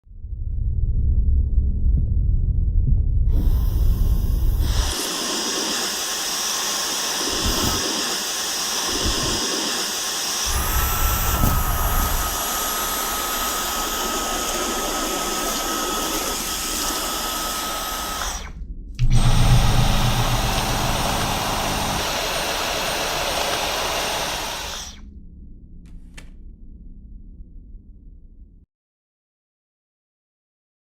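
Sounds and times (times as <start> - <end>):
stick vacuum running: 3.3 - 25.0.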